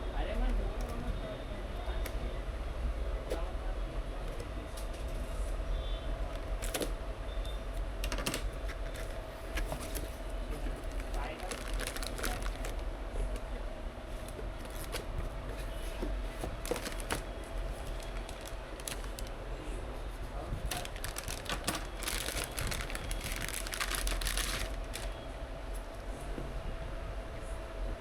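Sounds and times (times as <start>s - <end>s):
crinkling and rustling: 6.3s - 7.0s, 8.0s - 13.4s, 14.0s - 26.0s.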